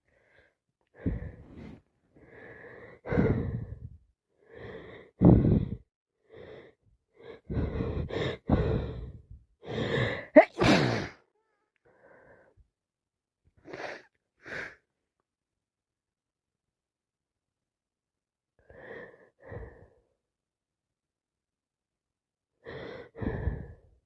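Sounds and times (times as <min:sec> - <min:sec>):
woman breathing through congested nose: 0:00.1 - 0:10.3, 0:22.6 - 0:24.0.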